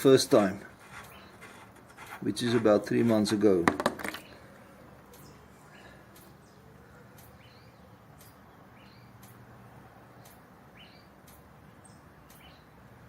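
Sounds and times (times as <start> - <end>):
faint ticking: 4.2 - 13.0.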